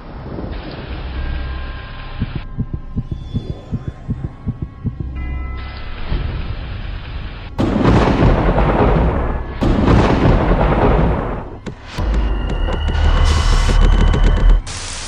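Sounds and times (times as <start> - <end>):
thunder rolling: 7.6 - 14.6.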